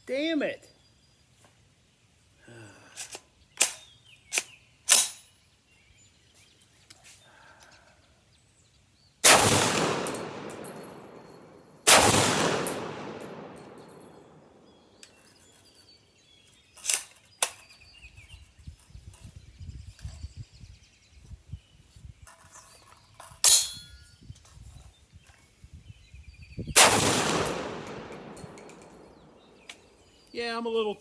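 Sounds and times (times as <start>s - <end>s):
rifle shots echoing: 9.2s - 14.7s, 26.8s - 29.9s.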